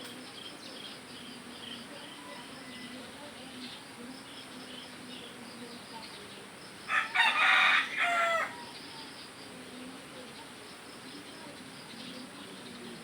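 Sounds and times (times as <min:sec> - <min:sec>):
birds chirping: 0:00.0 - 0:13.0
faint insects chirping: 0:00.0 - 0:13.0
rooster crowing: 0:06.9 - 0:08.6.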